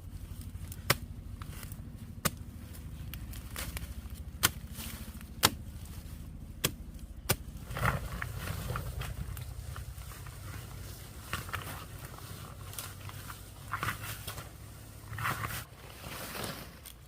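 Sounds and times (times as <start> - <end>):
steady low hum: 0.0 - 15.8
hand tool chopping: 0.7 - 2.6, 3.4 - 5.8, 6.6 - 8.2.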